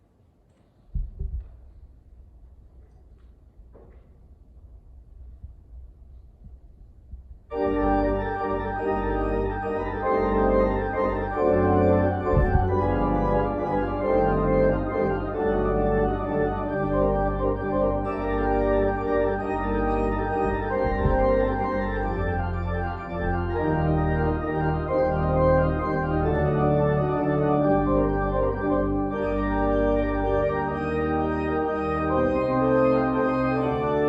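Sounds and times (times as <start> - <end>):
church organ chords: 7.5 - 34.0.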